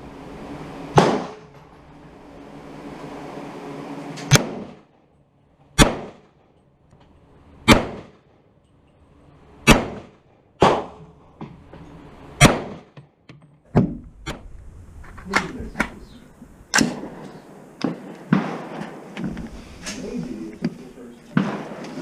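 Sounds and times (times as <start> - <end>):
rifle shots with short echo: 0.9 - 1.5, 4.3 - 4.9, 5.8 - 6.4, 7.6 - 8.3, 9.6 - 11.0, 12.4 - 13.0, 16.7 - 19.4, 21.3 - 22.0.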